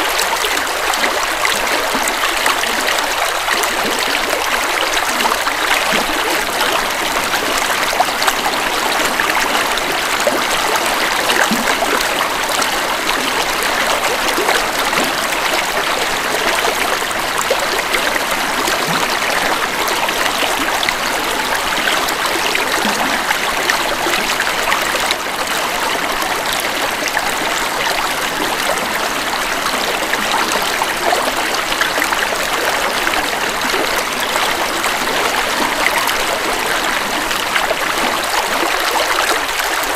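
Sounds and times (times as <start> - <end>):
river flowing over rocks: 0.0 - 39.9.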